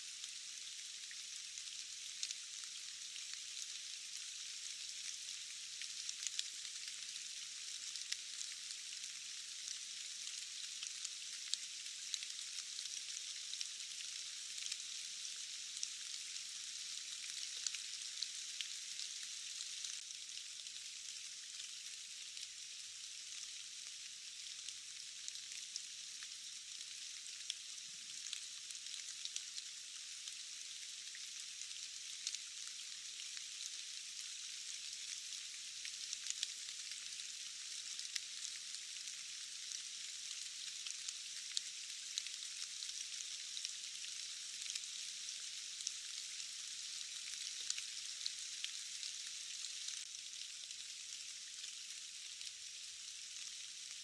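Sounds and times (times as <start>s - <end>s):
steady rain hiss: 0.0s - 54.0s
sharp raindrop ticks: 35.8s - 37.1s.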